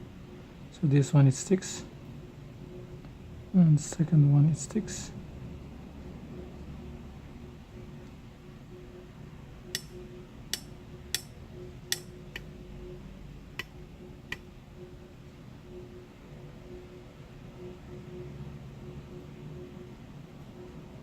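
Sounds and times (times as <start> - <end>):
metal tool tapping pins: 9.7 - 12.5.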